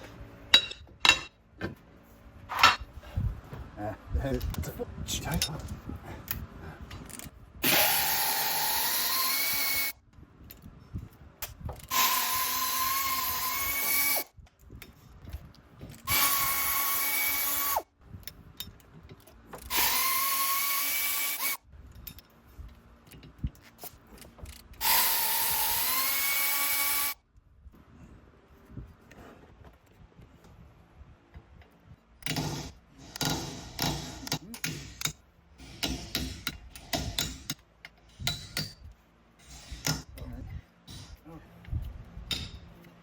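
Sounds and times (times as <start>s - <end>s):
power drill whirring: 7.6s - 10.0s, 11.9s - 14.3s, 16.0s - 17.8s, 19.7s - 21.6s, 24.8s - 27.2s.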